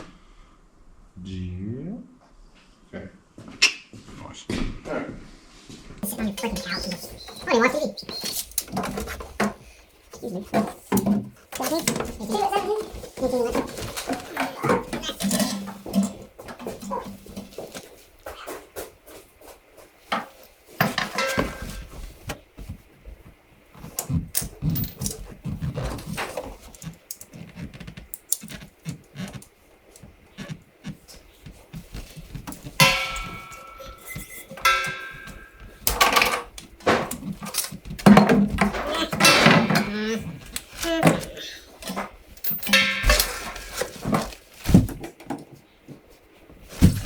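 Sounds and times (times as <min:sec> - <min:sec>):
metal tools clinking and rattling: 0:06.0 - 0:18.6, 0:20.1 - 0:22.3, 0:23.8 - 0:29.4, 0:31.8 - 0:44.9.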